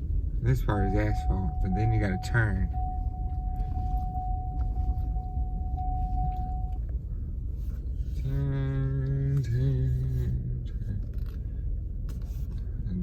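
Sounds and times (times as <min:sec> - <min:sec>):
car engine and tyre rumble: 0:00.0 - 0:13.0
thin steady high tone: 0:00.6 - 0:06.8.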